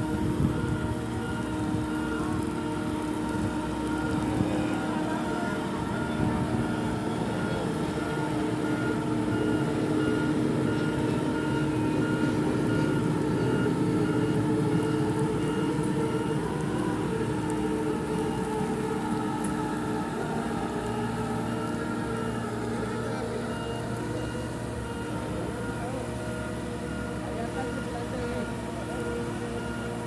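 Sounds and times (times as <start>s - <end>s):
travelift engine droning: 0.0s - 30.0s.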